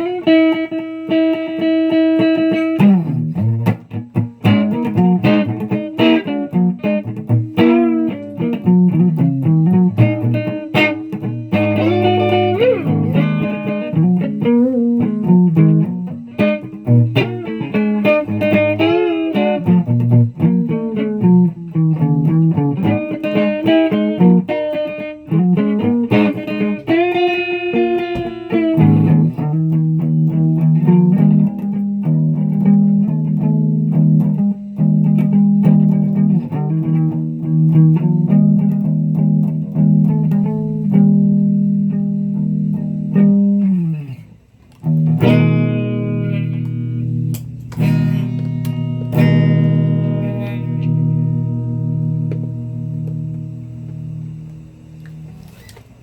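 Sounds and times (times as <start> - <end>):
electric guitar playing: 0.0 - 56.0.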